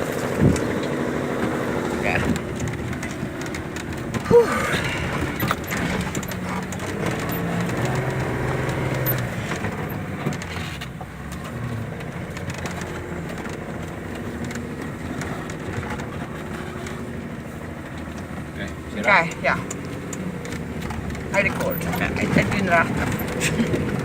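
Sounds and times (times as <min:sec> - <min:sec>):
vehicle engine under load: 0:00.0 - 0:24.0.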